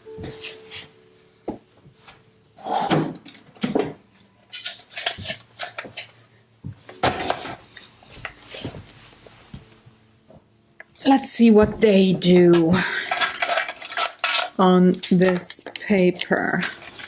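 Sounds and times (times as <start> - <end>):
coloured pencils clacking together: 4.5 - 6.1, 12.2 - 17.0.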